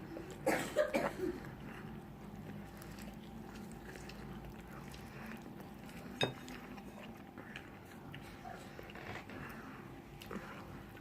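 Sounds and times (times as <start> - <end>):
person chewing food: 1.3 - 11.0.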